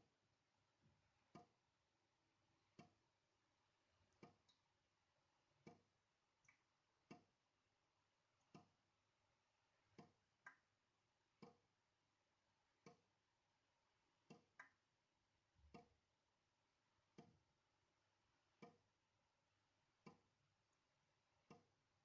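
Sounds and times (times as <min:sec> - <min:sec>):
water dripping into sink: 0:01.3 - 0:01.6, 0:04.1 - 0:04.7, 0:05.6 - 0:07.4, 0:08.4 - 0:08.8, 0:09.8 - 0:10.8, 0:11.4 - 0:11.7, 0:12.8 - 0:13.1, 0:14.2 - 0:14.8, 0:15.6 - 0:16.0, 0:17.1 - 0:17.5, 0:18.5 - 0:18.9, 0:21.4 - 0:21.8.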